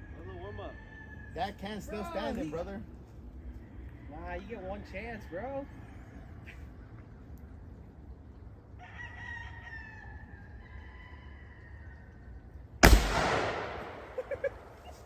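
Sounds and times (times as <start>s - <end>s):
rooster crowing: 0.0s - 1.9s, 3.6s - 6.6s, 8.8s - 12.2s, 14.0s - 15.0s
rifle shot with echo: 12.8s - 15.0s.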